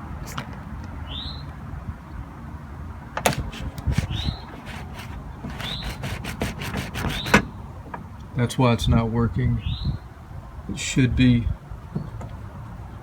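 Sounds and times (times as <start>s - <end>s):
short squeaks: 3.3s - 7.6s.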